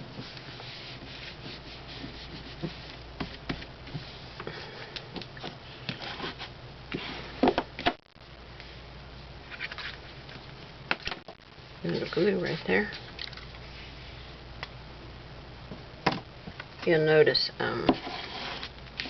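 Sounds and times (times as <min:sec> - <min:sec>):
paper rustling and scraping: 0:05.4 - 0:07.4, 0:09.5 - 0:10.5, 0:17.9 - 0:18.7.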